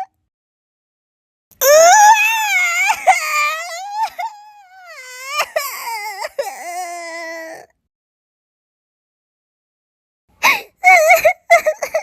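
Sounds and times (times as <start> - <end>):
cartoon crying wail: 1.6 - 7.7.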